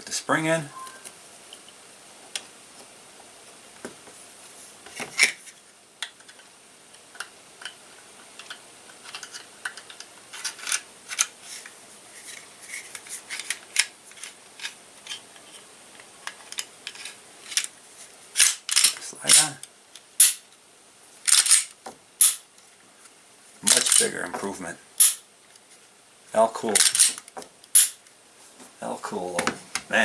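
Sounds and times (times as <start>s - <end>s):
pistol parts clicking and scraping: 7.2s - 11.7s, 12.3s - 17.8s, 18.4s - 20.5s, 21.3s - 22.4s, 23.7s - 24.2s, 25.0s - 25.2s, 26.7s - 28.0s.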